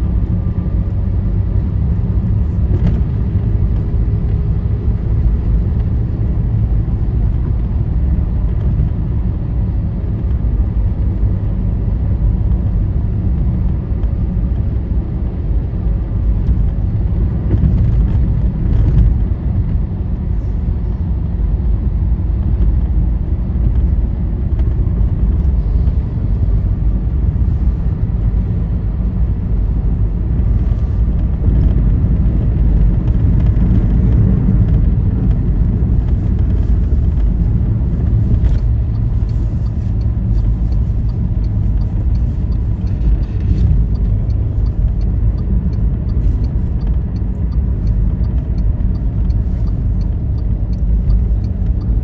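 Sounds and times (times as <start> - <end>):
vehicle engine and tyre rumble: 0.0 - 52.0
faint regular ticking: 32.6 - 52.0.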